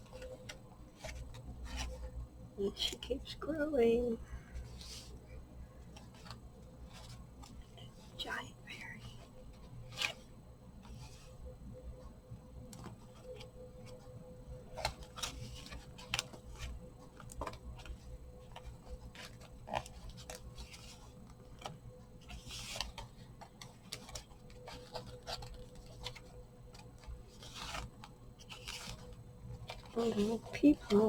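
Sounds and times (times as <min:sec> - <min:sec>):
paper pages rustling: 0:00.0 - 0:02.1, 0:05.8 - 0:08.2, 0:14.7 - 0:31.0
faint steady hum: 0:00.0 - 0:31.0.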